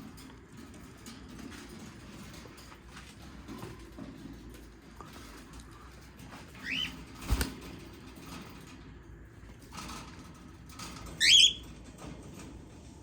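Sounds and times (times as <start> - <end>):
cockatiels calling: 6.6 - 6.9, 11.2 - 11.6.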